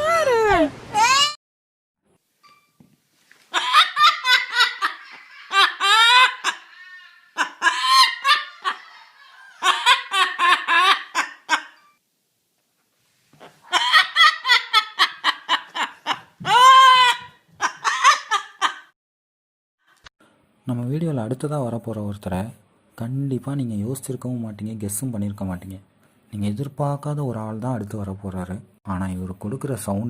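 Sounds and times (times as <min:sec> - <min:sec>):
high-pitched laughter: 0:00.0 - 0:01.4, 0:03.5 - 0:11.8, 0:13.4 - 0:18.9.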